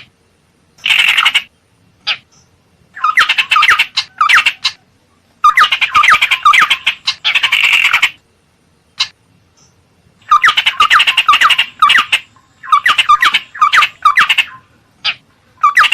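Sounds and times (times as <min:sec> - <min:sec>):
bird chattering scold calls: 0:00.8 - 0:04.8, 0:05.4 - 0:08.2, 0:10.2 - 0:15.9.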